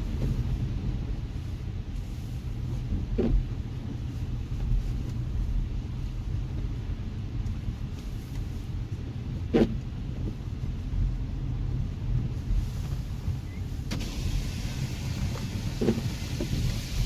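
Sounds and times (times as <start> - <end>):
low rumble: 10.0 - 17.0.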